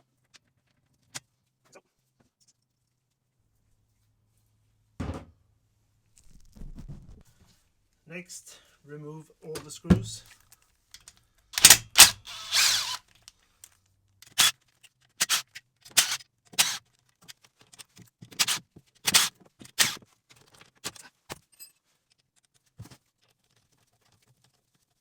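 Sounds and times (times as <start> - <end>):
tool clicks and metal rattles: 11.0 - 13.3, 14.2 - 14.5, 15.2 - 16.8, 18.4 - 20.0.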